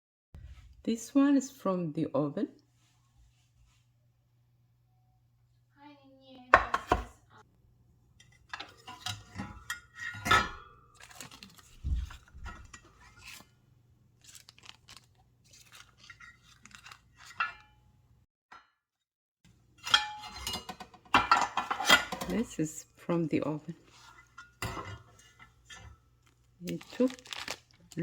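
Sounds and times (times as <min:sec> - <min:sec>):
pans and utensils clinking: 0:06.6 - 0:07.2, 0:08.2 - 0:13.4, 0:15.8 - 0:17.8, 0:19.8 - 0:22.6, 0:23.9 - 0:26.0.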